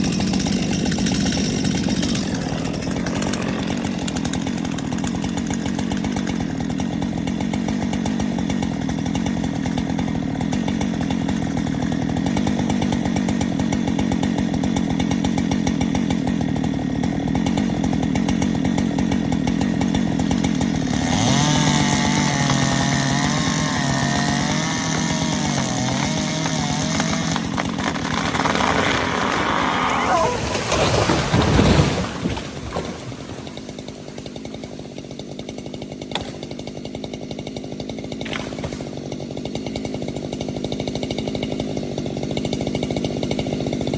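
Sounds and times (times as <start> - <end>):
chainsaw cutting wood at high revs: 0.0 - 43.9.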